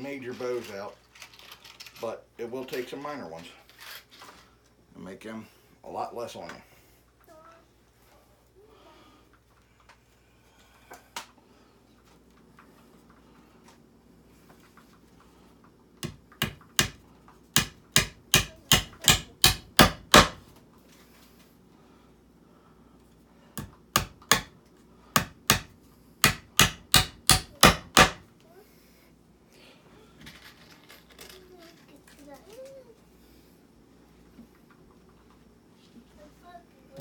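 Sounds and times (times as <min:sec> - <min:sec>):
hammer driving nails into wood: 0:16.0 - 0:17.0, 0:17.6 - 0:20.4, 0:23.6 - 0:24.5, 0:25.2 - 0:28.2.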